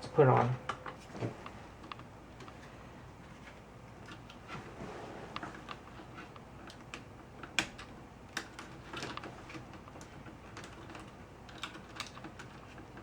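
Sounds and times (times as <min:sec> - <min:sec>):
keyboard keycaps clicking: 0:06.4 - 0:13.0.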